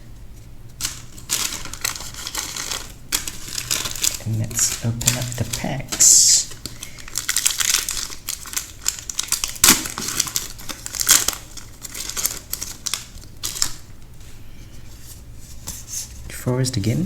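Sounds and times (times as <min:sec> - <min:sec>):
foil wrapper crinkling and tearing: 0:00.7 - 0:14.2.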